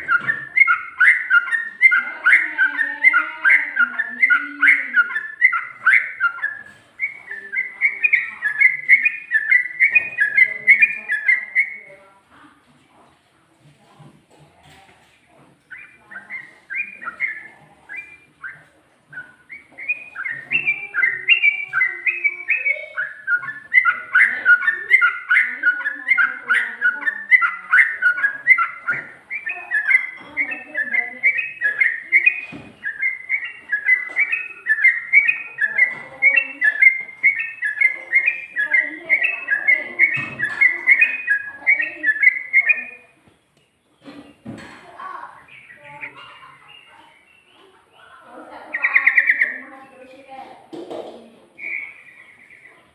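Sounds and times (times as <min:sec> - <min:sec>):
bird singing rapid whistled notes: 0:00.0 - 0:11.9, 0:15.6 - 0:43.2, 0:43.9 - 0:50.4, 0:51.5 - 0:52.9.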